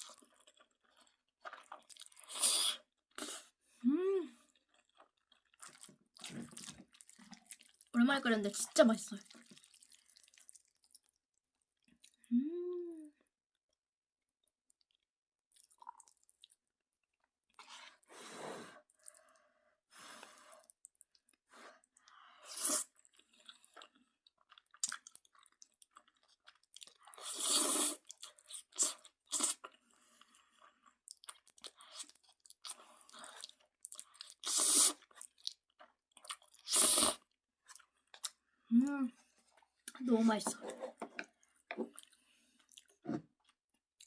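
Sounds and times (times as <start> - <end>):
person chewing noodles: 0.0 - 7.9, 9.2 - 11.2, 15.6 - 18.1, 20.3 - 38.4, 40.6 - 43.6.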